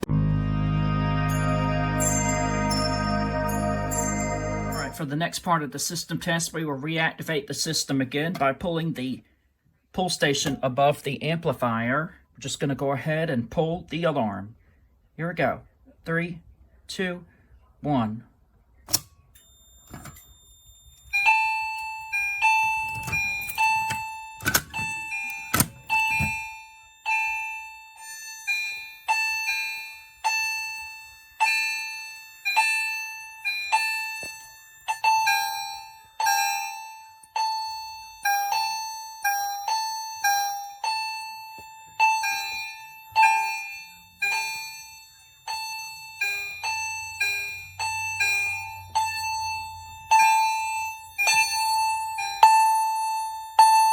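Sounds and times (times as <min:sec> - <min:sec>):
fire alarm chimes ringing: 0:00.0 - 0:05.0, 0:19.3 - 0:53.9.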